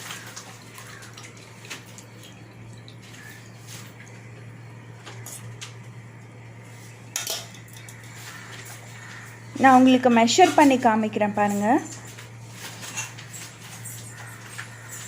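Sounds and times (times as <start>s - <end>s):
liquid dripping through strainer: 0.0s - 4.2s
steady low hum: 0.0s - 15.0s.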